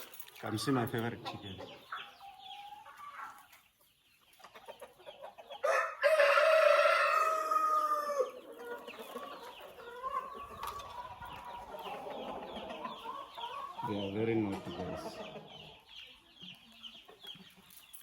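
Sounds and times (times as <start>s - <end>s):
hens clucking: 0.4s - 17.9s
rooster crowing: 5.6s - 8.4s.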